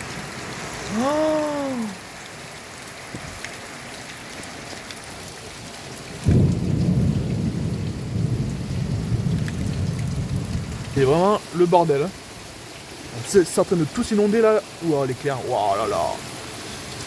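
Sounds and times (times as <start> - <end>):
torrential rain: 0.0 - 17.0
loud thunderclap rumbling: 6.2 - 11.2.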